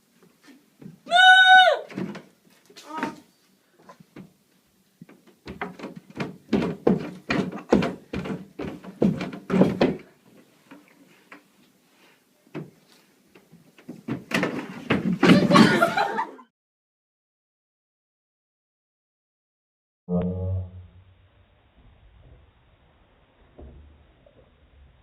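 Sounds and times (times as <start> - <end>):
thumps and knocks: 5.1 - 10.1, 13.8 - 15.6.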